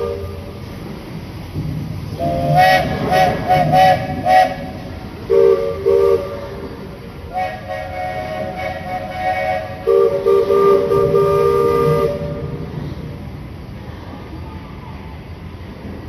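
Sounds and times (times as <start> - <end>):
high steam whistle toots: 0.0 - 0.7, 2.1 - 13.2
low steam whistle blasts: 0.0 - 0.9, 2.1 - 13.2.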